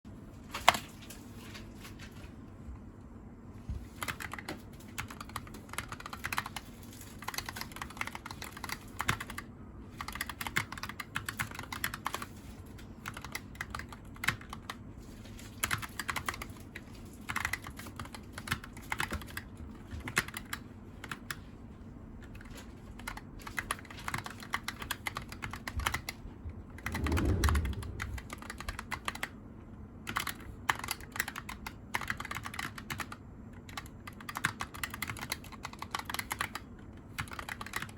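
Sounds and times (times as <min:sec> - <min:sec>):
low thud: 0:26.9 - 0:28.6.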